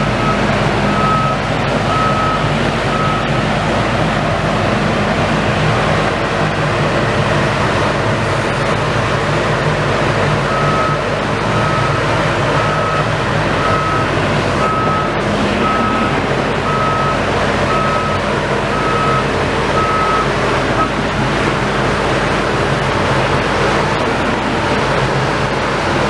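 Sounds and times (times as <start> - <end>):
reversing alarm beeping: 0.0 - 3.4, 10.4 - 21.0
engine running: 0.0 - 26.0
street noise: 0.0 - 26.0.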